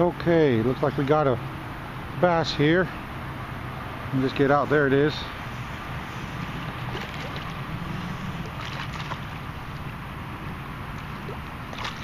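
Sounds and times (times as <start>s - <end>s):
faint water sounds: 0.0s - 12.0s
wind noise on microphone: 5.7s - 12.0s.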